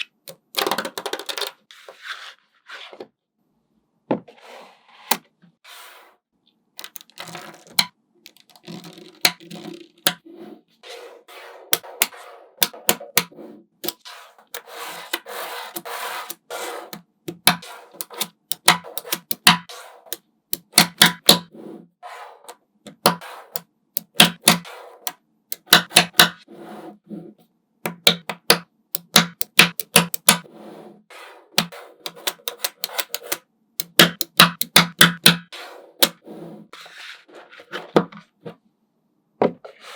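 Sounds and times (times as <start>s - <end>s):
magnetic balls clicking together: 6.8s - 10.2s, 17.3s - 19.7s, 20.6s - 21.5s, 22.9s - 26.4s, 27.9s - 30.4s, 31.6s - 36.1s
magnetic balls rolling and rubbing: 6.8s - 38.6s.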